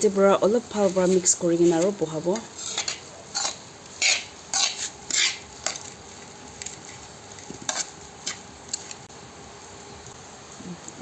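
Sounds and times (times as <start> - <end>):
faint sizzle: 0.0 - 11.0
spoon scraping a pan: 0.7 - 9.0.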